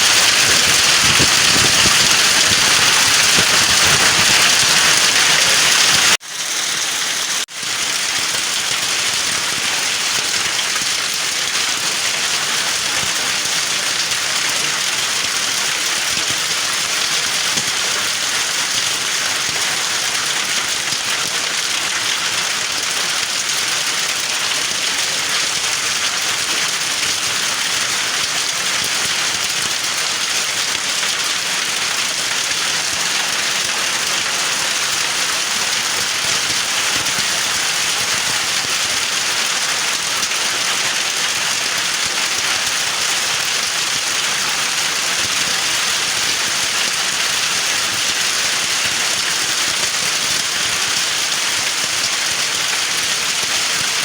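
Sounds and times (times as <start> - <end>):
hail and rain pelting down: 0.0 - 54.0.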